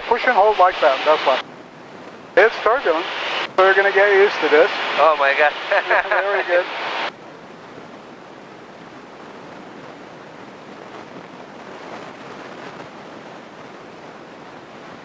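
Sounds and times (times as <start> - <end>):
airplane cabin noise: 0.0 - 1.4, 2.1 - 7.1.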